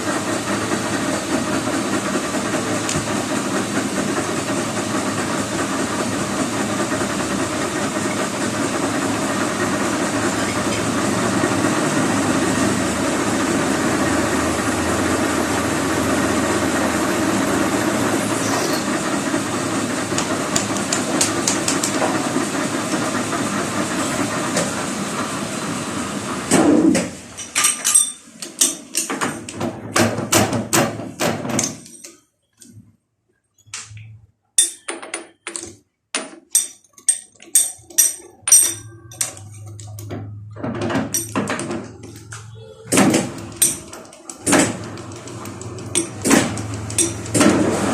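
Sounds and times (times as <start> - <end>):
metal lathe running: 0.0 - 26.6, 42.9 - 47.9
sharp metallic clicks and knocks: 27.4 - 32.8, 33.6 - 47.7.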